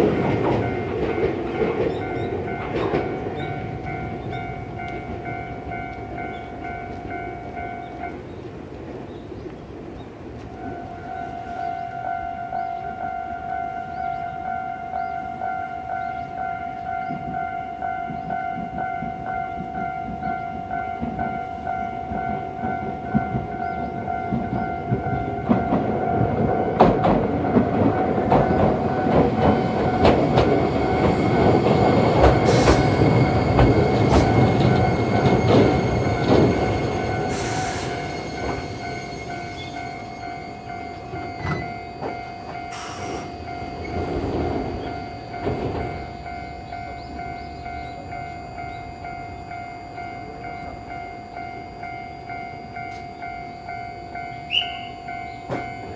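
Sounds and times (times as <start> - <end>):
train wheels clacking on rail joints: 0.0 - 8.2, 17.0 - 46.3
level crossing alarm ringing: 0.0 - 8.3, 10.5 - 55.9.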